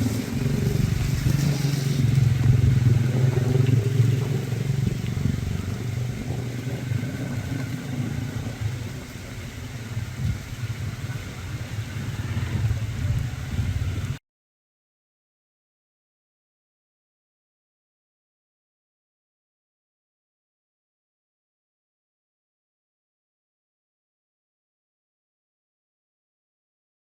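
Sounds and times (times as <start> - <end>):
strong wind gusting on microphone: 0.0 - 14.2.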